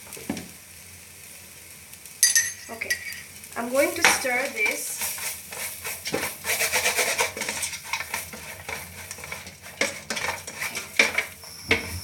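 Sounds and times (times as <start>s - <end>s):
onions sizzling: 0.0s - 12.0s
utensil clinks: 2.2s - 3.2s
utensil scraping a pan: 4.0s - 12.0s.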